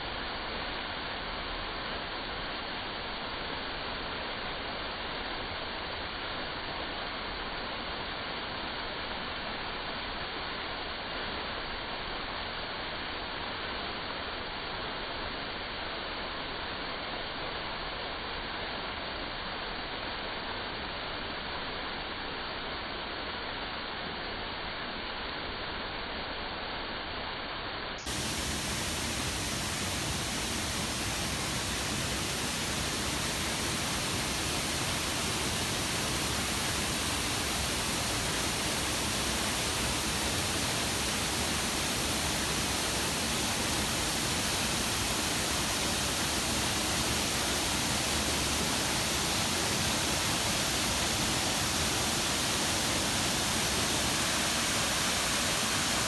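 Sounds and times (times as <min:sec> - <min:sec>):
waterfall pouring: 0:28.1 - 0:56.0.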